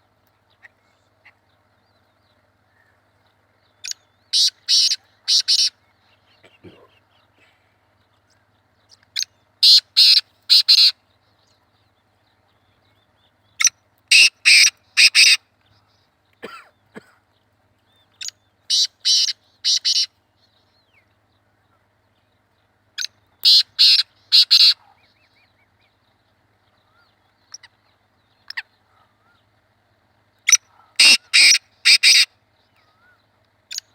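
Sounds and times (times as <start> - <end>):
francolin calling harsh phrases: 3.8 - 7.0, 9.2 - 11.0, 13.6 - 15.4, 18.2 - 20.2, 23.0 - 25.2, 30.5 - 32.3.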